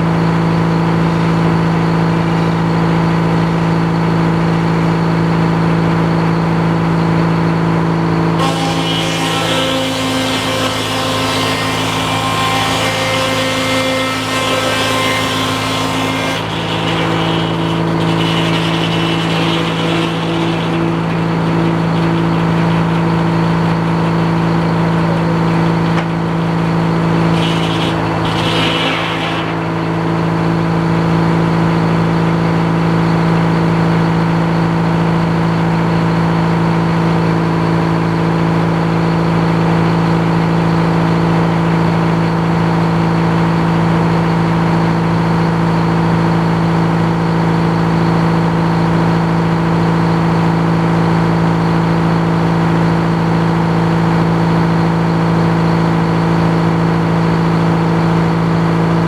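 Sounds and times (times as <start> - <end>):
sawmill engine running: 0.1 - 59.0
hissing saw cutting: 8.4 - 31.5.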